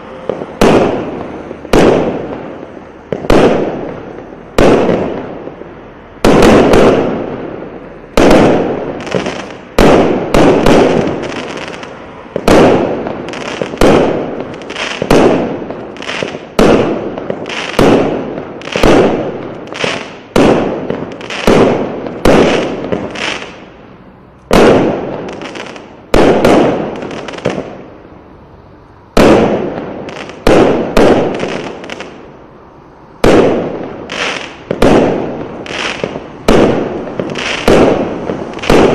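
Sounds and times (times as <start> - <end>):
firework cake shots: 8.1 - 23.8, 33.2 - 38.9.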